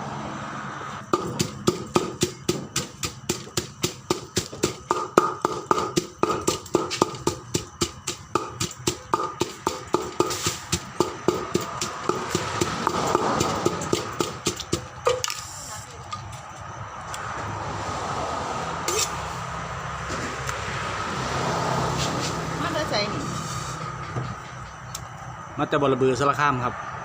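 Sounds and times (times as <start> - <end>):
wooden pestle pounding in mortar: 1.1 - 15.2.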